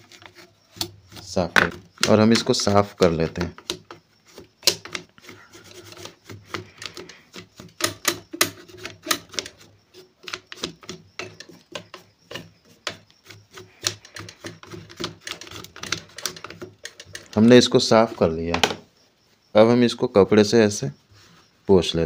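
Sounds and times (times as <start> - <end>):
cleaning tool scraping metal: 4.2 - 18.4.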